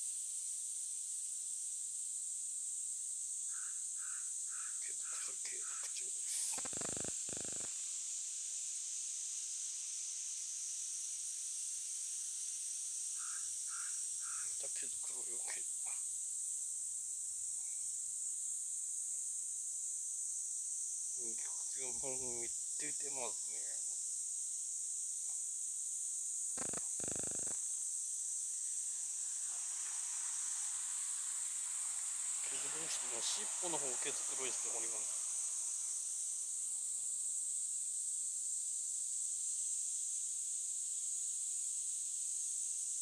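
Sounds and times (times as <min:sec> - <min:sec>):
high-pitched hiss: 0:00.0 - 0:43.0
insects droning: 0:00.0 - 0:43.0
cat grooming itself: 0:06.3 - 0:07.7, 0:26.6 - 0:27.6.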